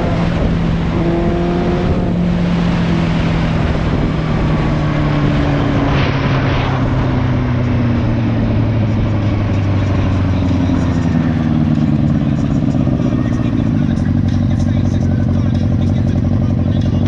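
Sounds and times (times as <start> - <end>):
rushing noise: 0.0 - 9.3
motorcycle engine running: 0.0 - 17.0.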